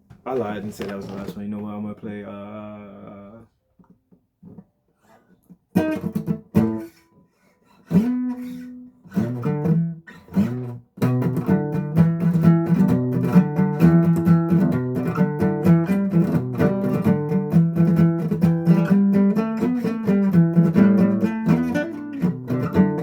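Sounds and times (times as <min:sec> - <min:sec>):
guitar plucking and strumming: 0:05.7 - 0:23.0.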